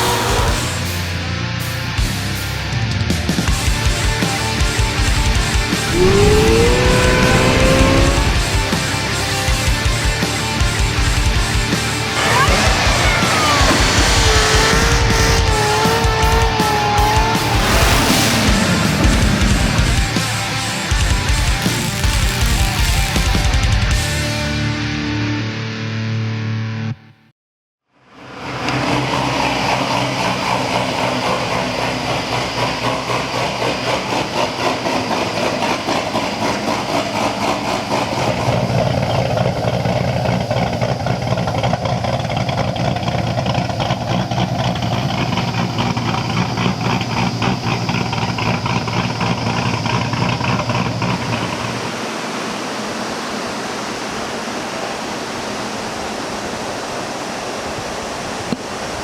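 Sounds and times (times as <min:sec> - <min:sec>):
car engine running: 0:03.5 - 0:23.6.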